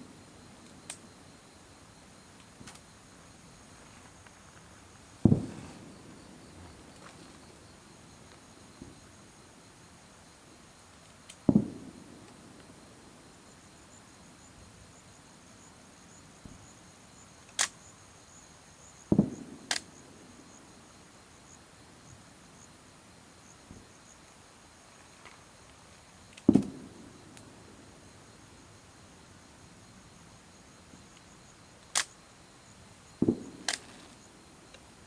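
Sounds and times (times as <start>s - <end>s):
faint insect chirring: 0.0s - 35.0s
firework shells booming: 5.2s - 7.4s, 11.5s - 12.1s, 19.1s - 19.7s, 26.5s - 27.2s, 33.2s - 34.3s
sharp firework cracks: 5.2s - 7.4s, 11.3s - 12.0s, 26.4s - 27.1s, 33.2s - 34.3s.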